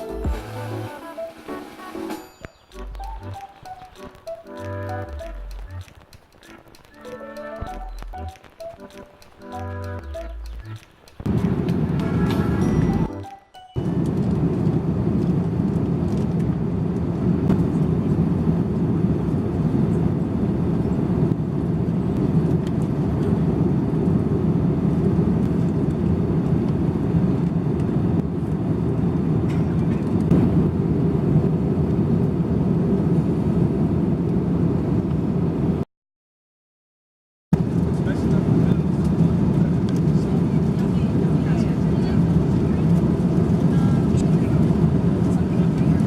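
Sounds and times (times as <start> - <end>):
jet airliner cabin roar: 11.3 - 13.1, 13.8 - 35.8, 37.6 - 46.0.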